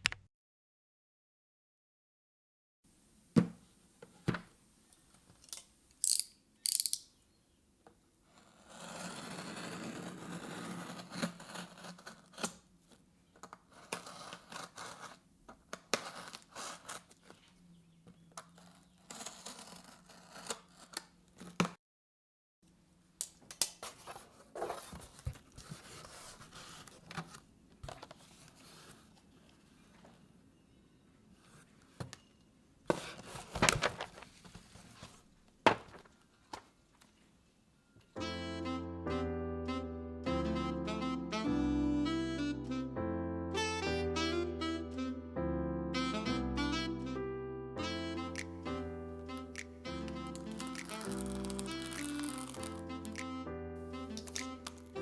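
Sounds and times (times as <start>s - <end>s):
box and plastic rustling: 11.1s - 21.7s, 23.4s - 30.4s, 31.3s - 37.3s, 48.2s - 53.2s, 53.9s - 55.0s.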